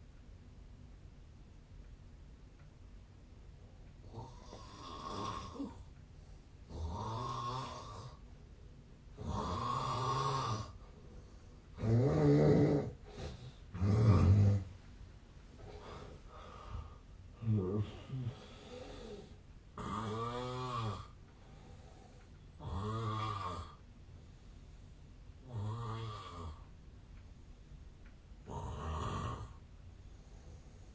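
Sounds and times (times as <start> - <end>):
man snoring: 4.1 - 5.8, 6.7 - 8.2, 9.2 - 10.8, 11.8 - 14.7, 15.8 - 21.2, 22.6 - 23.8, 25.4 - 26.7, 28.5 - 29.6.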